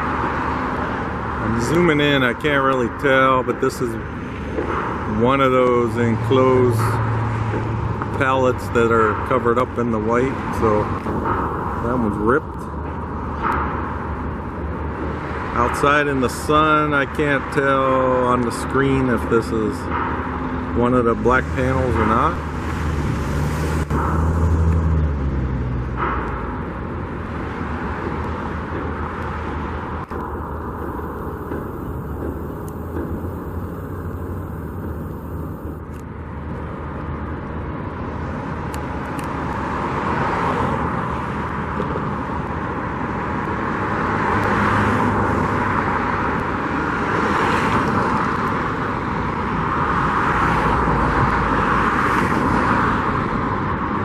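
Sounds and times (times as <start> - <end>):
cars passing: 0.0 - 54.0
steady traffic hum: 0.0 - 54.0.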